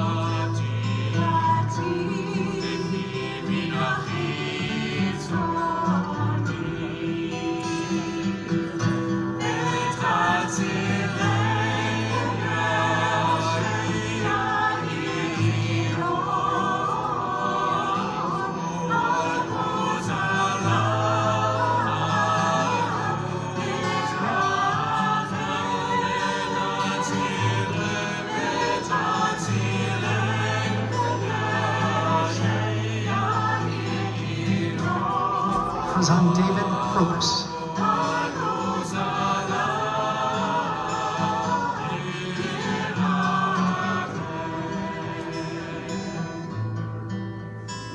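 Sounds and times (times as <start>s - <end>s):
voices singing together: 0.0s - 47.9s.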